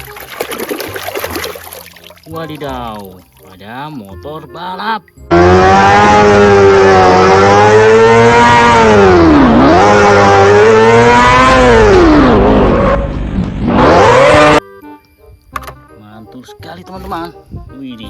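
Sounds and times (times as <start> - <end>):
racing motorcycle engine revving: 5.3 - 14.6.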